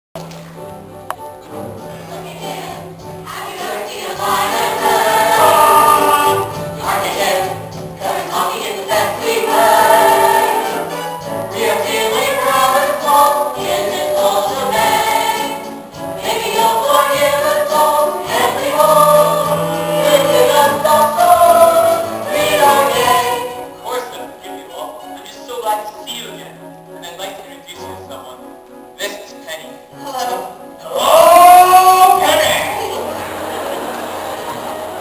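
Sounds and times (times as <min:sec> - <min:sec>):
musical accompaniment: 0:00.2 - 0:35.0
choir singing: 0:02.0 - 0:23.8, 0:30.4 - 0:35.0.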